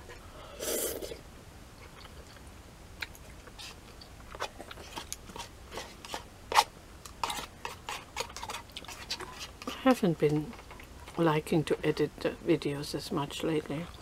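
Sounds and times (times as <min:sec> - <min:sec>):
noisy intake of noodles: 0:00.2 - 0:01.2.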